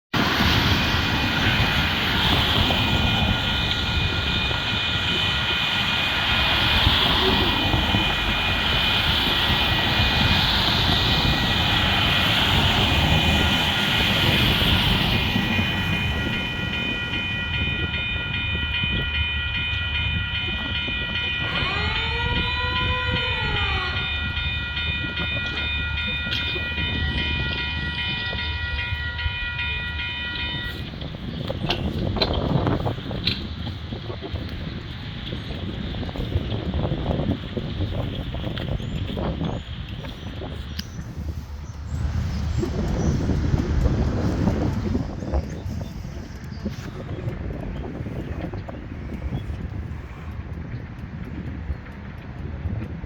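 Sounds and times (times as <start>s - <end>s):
low rumble: 40.0s - 53.0s.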